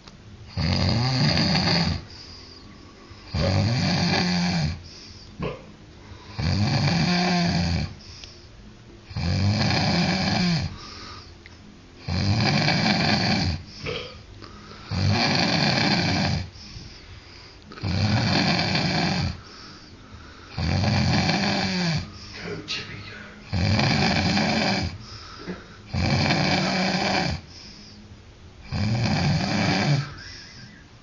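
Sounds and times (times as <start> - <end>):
person snoring loudly: 0.5 - 2.4, 3.2 - 8.0, 9.1 - 11.2, 12.0 - 16.7, 17.7 - 22.5, 23.4 - 25.3, 25.9 - 27.8, 28.6 - 30.8.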